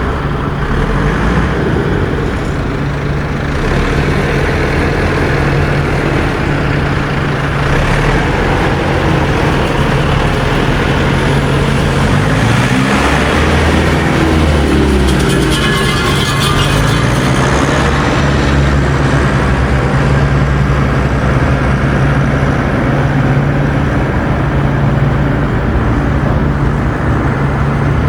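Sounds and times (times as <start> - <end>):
harvester engine running: 0.0 - 28.0
shifting gliding tone: 1.4 - 26.2.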